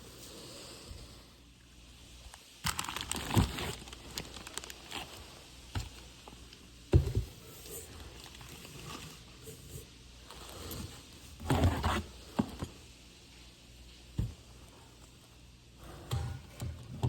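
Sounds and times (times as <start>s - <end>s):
plastic and cardboard crinkling: 2.3s - 9.5s
packaging thumps: 2.6s - 5.2s.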